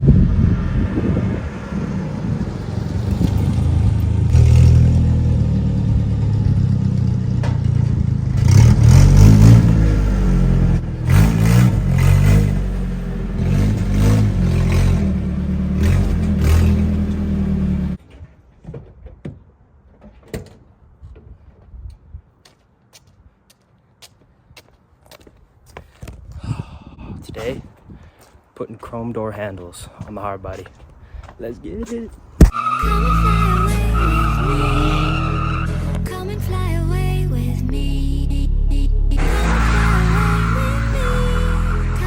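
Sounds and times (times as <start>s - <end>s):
vehicle engine revving: 0.0s - 18.0s, 32.4s - 42.0s.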